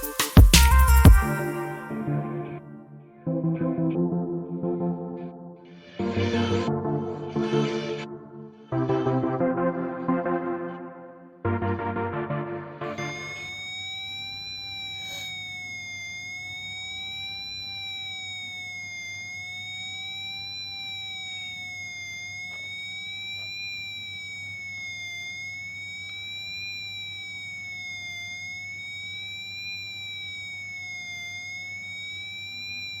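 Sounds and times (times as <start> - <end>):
wailing electronic siren: 0.0 - 3.3, 12.7 - 33.0.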